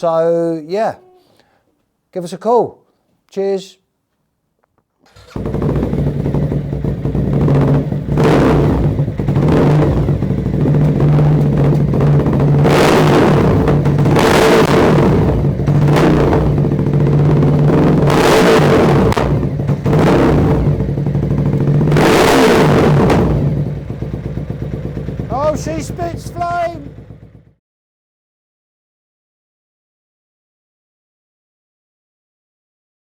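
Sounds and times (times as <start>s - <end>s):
motorcycle engine revving: 5.1s - 27.6s.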